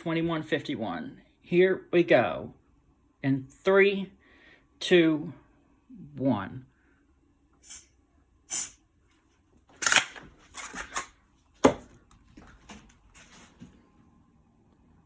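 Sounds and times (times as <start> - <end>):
aerosol spray hissing puffs: 7.6 - 7.9, 8.5 - 8.8.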